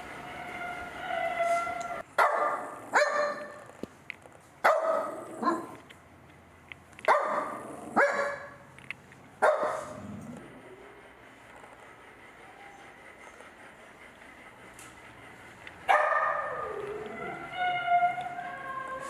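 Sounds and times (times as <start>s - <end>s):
dog barking: 1.0s - 3.7s, 4.6s - 5.8s, 7.1s - 8.6s, 9.4s - 10.0s, 15.9s - 18.1s.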